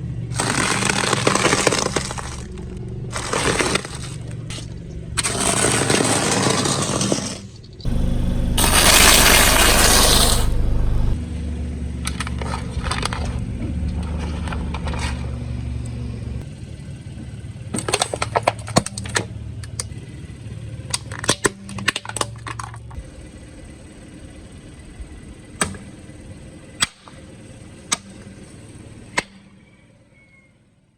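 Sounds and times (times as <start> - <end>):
objects cracking under a tyre: 0.4 - 7.3
car engine hum: 7.9 - 11.2.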